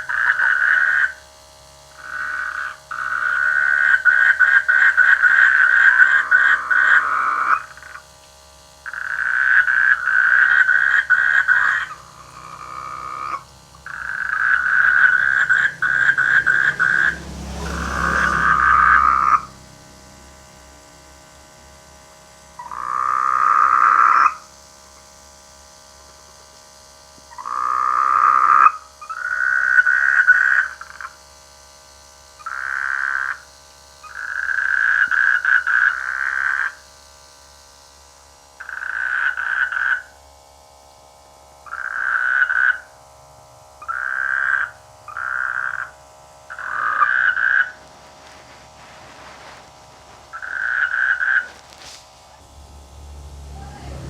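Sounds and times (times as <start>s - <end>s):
frogs croaking: 0.0s - 1.3s, 1.9s - 21.0s, 22.6s - 25.1s, 27.3s - 31.4s, 32.2s - 37.0s, 38.6s - 40.2s, 41.6s - 54.0s
low rumble: 51.6s - 54.0s.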